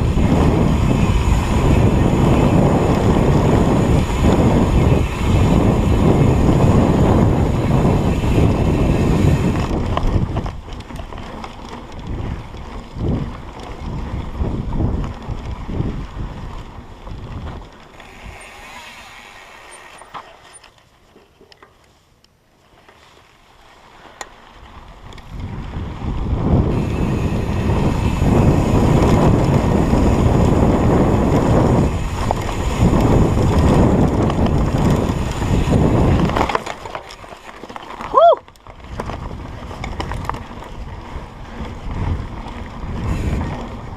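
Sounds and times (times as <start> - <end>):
wind buffeting microphone: 0.0 - 19.0, 24.6 - 37.3, 37.9 - 43.9
knocks and rattles from rough ground: 2.9 - 18.5, 27.9 - 43.9.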